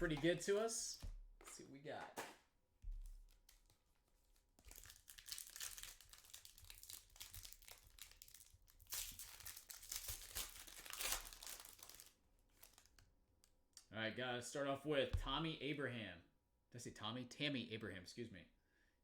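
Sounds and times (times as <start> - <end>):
packaging crinkling and tearing: 3.1 - 13.0
soft thump: 15.2 - 15.5.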